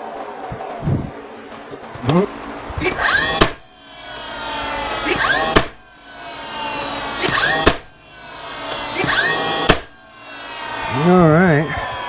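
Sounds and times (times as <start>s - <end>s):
nailer motor whining: 0.0s - 12.0s
nailer firing snap: 2.0s - 11.0s.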